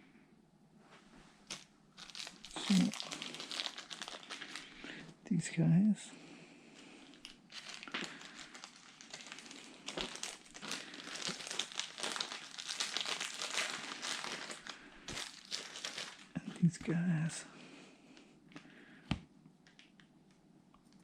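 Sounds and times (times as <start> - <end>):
plastic packaging crinkling: 1.4 - 5.0, 6.8 - 17.0.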